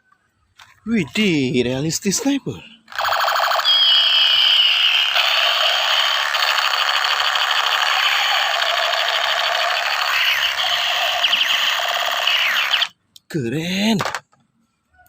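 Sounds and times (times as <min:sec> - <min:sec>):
toy gun electronic buzz: 0:02.9 - 0:12.9.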